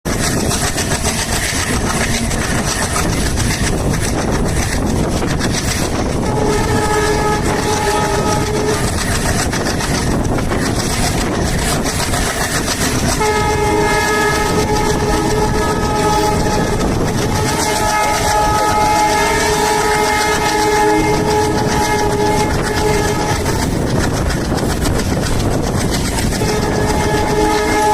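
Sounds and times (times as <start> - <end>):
train rolling clatter: 0.1 - 27.9
locomotive horn chord: 6.2 - 9.0, 13.1 - 23.6, 26.4 - 27.9.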